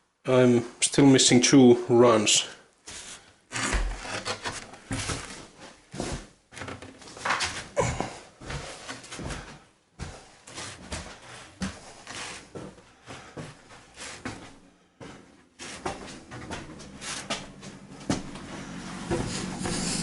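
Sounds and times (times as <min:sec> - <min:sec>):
scraping rustles: 0:02.9 - 0:07.7, 0:10.4 - 0:12.8, 0:15.6 - 0:20.0
wooden knocks and creaks on floor: 0:03.5 - 0:07.8.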